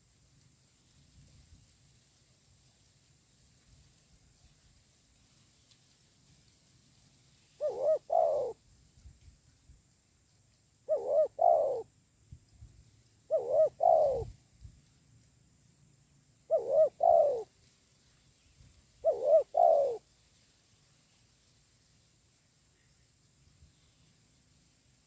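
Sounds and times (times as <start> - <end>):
dove cooing: 7.6 - 8.6, 10.8 - 11.9, 13.3 - 14.4, 16.5 - 17.5, 19.0 - 20.0.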